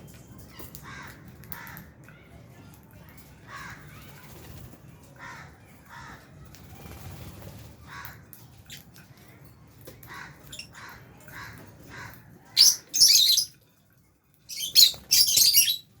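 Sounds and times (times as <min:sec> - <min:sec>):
birds chirping harshly: 0:03.2 - 0:13.6, 0:14.4 - 0:16.0.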